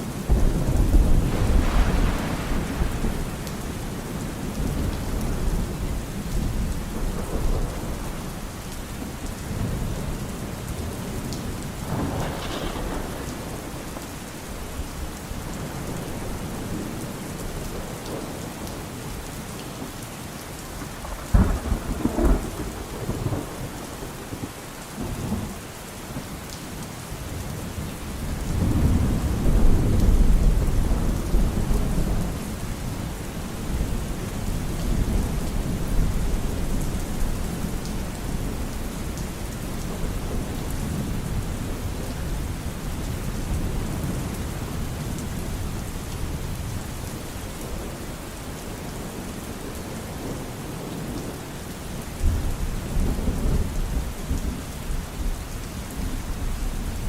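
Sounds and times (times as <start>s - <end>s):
steady rain: 0.0s - 57.0s
sharp thunderclap: 0.3s - 8.0s, 11.8s - 14.5s, 20.8s - 24.5s
rolling thunder: 0.3s - 10.1s, 10.8s - 18.4s, 20.8s - 25.6s, 28.2s - 48.0s.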